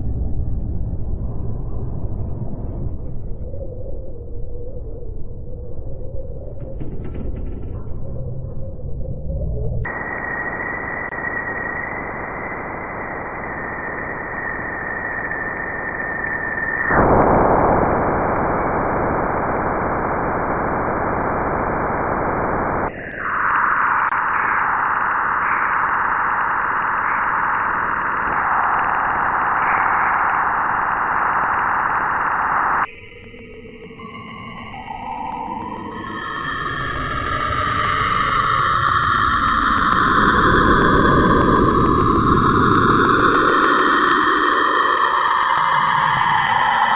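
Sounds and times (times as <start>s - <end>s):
high whistle: 9.9s - 18.0s
static-like hiss: 17.4s - 32.9s.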